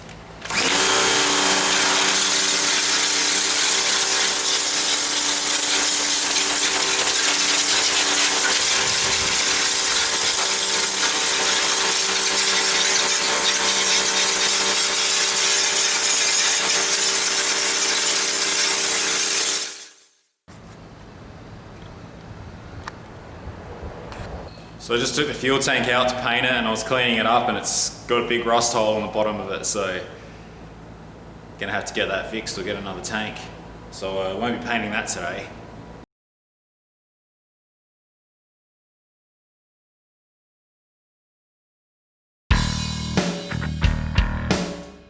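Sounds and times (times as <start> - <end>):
power tool running with hiss: 0.4 - 20.1.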